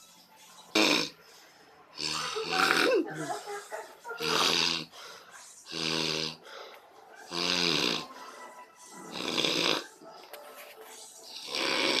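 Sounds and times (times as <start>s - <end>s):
person snoring loudly: 5.7s - 6.4s, 7.3s - 8.2s, 9.0s - 9.9s, 11.3s - 12.0s.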